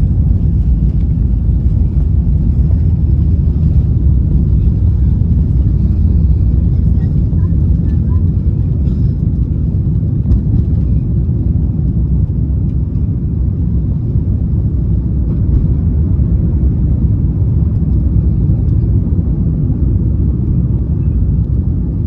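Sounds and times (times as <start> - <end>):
airliner cabin rumble: 0.0 - 22.0.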